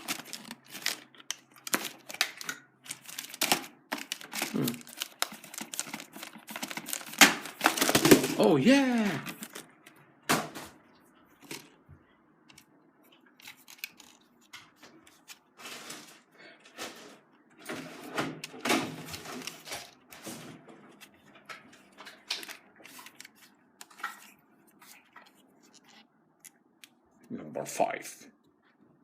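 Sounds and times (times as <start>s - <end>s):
packaging rustling: 0.0s - 9.7s, 13.4s - 14.5s, 17.7s - 26.0s.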